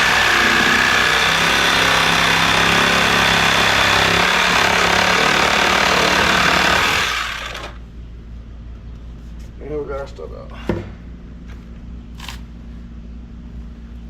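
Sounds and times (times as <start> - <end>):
power saw cutting plastic pipe: 0.0 - 7.8.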